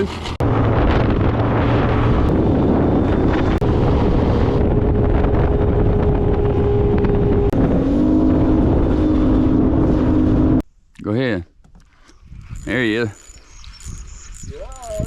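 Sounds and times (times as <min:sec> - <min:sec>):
wind noise on microphone: 0:00.0 - 0:10.6, 0:11.9 - 0:15.0
boat motor running: 0:00.4 - 0:10.6.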